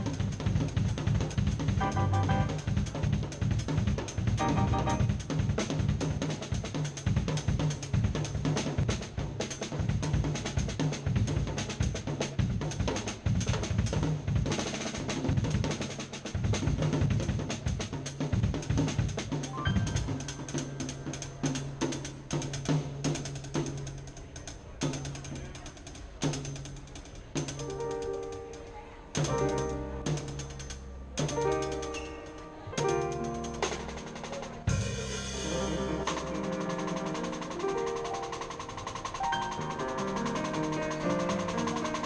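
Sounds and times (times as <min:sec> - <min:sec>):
drum kit played fast: 0:00.0 - 0:42.0
low bass note: 0:01.8 - 0:02.7.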